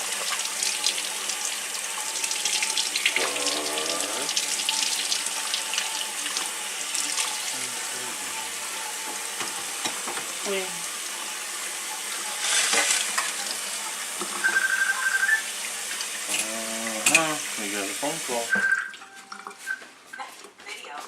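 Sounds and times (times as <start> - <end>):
tap running into a sink: 8.9 - 10.3
dishes and utensils clinking: 16.3 - 17.4.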